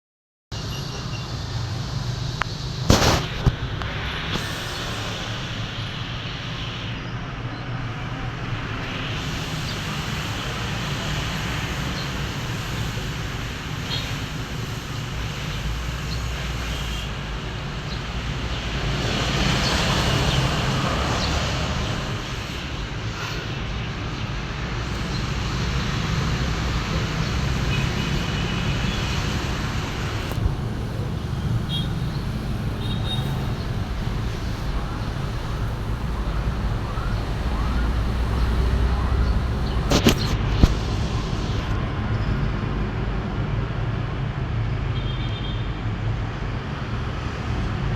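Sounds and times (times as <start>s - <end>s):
passing vehicles rumble: 0.6s - 45.0s, 45.6s - 47.9s
heavy rain hissing: 2.2s - 7.0s, 7.8s - 41.8s
wet tyres hissing: 2.6s - 7.0s, 8.9s - 23.9s, 24.6s - 41.7s.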